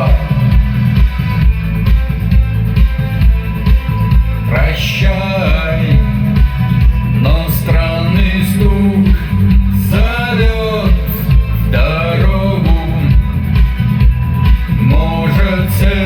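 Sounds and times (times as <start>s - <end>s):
man singing: 0.0s - 0.6s, 4.4s - 13.4s, 14.7s - 16.0s
rock song: 0.0s - 16.0s.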